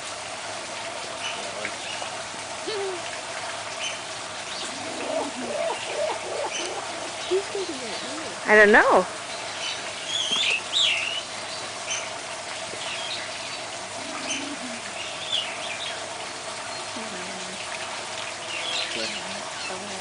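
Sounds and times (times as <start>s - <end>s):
birds chirping: 3.8s - 12.2s, 12.8s - 17.0s
steady low hum: 4.4s - 9.6s.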